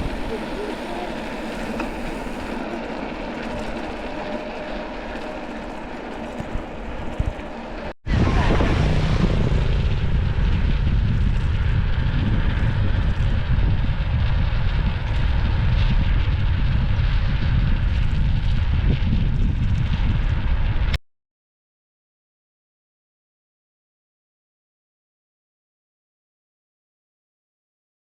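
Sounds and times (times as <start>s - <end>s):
wind buffeting microphone: 0.0s - 21.0s.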